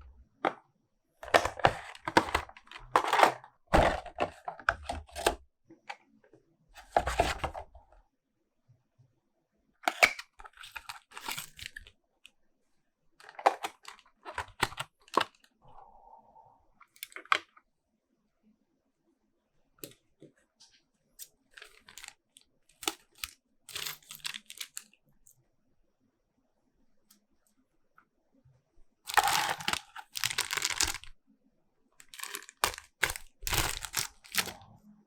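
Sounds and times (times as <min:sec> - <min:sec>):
packaging tearing and crinkling: 0:29.1 - 0:31.1, 0:32.0 - 0:34.6.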